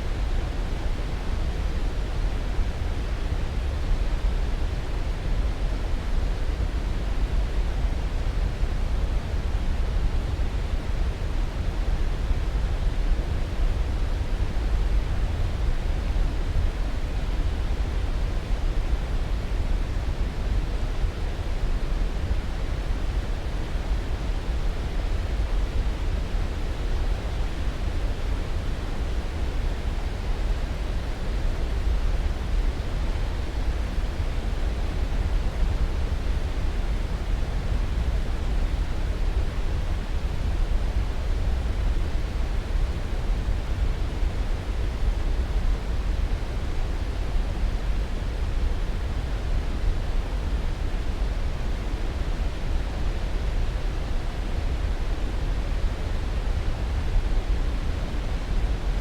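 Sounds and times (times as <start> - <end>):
low rushing hiss noise: 0.0 - 59.0.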